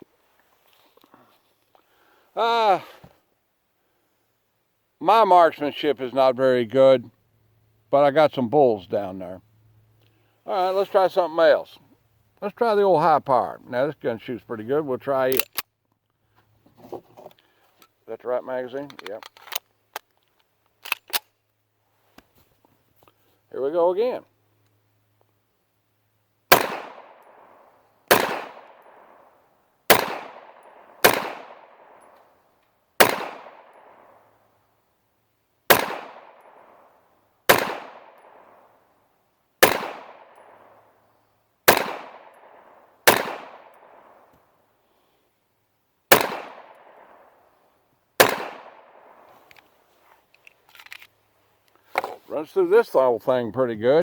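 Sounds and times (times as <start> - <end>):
pistol shots echoing: 26.5 - 32.2, 33.0 - 34.3, 35.7 - 38.8, 39.6 - 40.9, 41.7 - 44.3, 46.1 - 47.4, 48.2 - 49.3.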